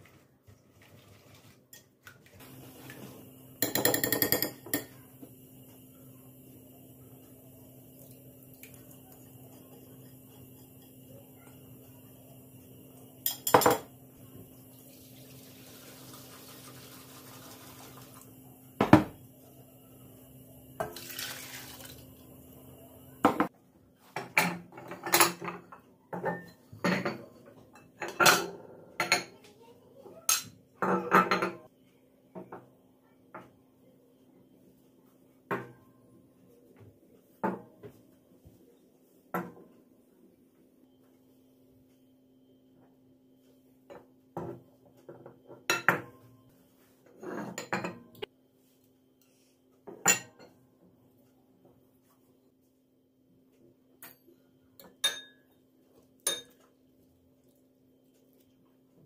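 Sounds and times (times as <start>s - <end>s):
dishes and cutlery clinking: 13.2s - 13.9s, 54.0s - 55.5s, 56.2s - 56.7s
running water: 14.5s - 18.3s, 20.8s - 22.3s.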